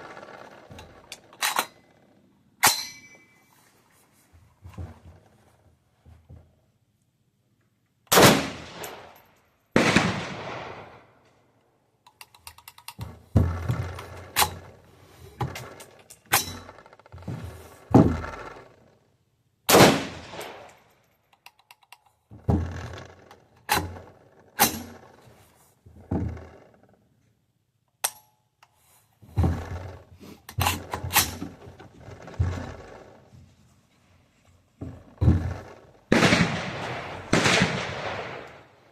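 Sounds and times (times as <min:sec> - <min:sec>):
gunshots with ringing tail: 0:09.8 - 0:11.1, 0:19.7 - 0:20.7, 0:36.1 - 0:38.8.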